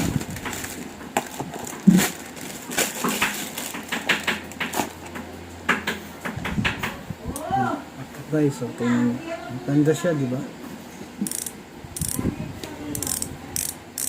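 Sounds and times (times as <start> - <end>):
packaging crinkling and crackling: 0.0 - 5.2.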